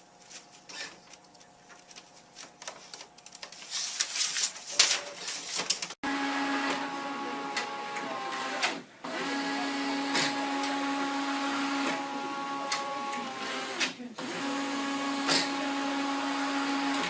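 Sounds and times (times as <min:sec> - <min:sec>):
printer whirring: 0:06.0 - 0:17.0.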